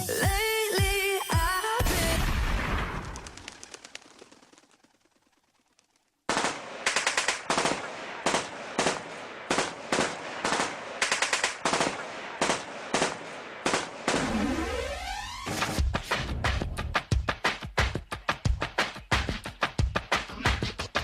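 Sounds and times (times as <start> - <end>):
machine-gun fire: 6.3 - 14.5.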